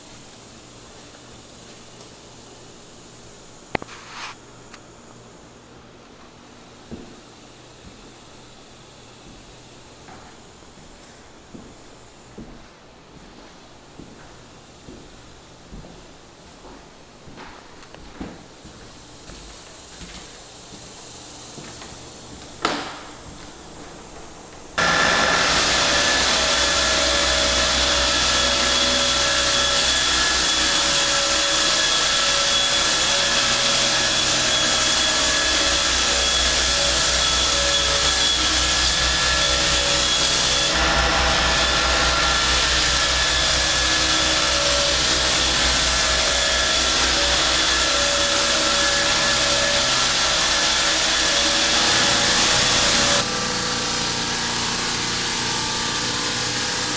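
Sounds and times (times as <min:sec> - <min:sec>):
electric machine whining: 0:24.8 - 0:56.9.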